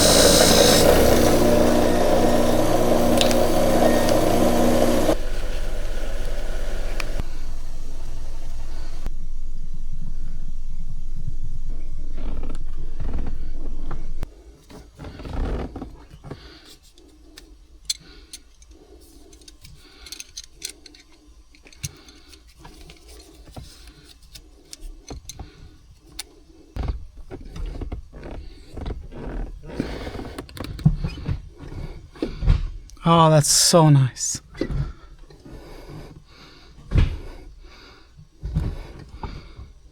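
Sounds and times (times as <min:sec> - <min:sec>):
buffing wheel motor humming: 0:00.0 - 0:09.1.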